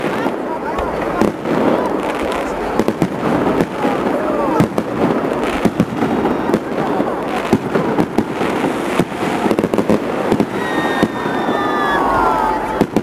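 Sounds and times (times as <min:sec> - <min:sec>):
fireworks bangs and crackles: 0:00.0 - 0:13.0
high falling firework whistle: 0:10.3 - 0:13.0.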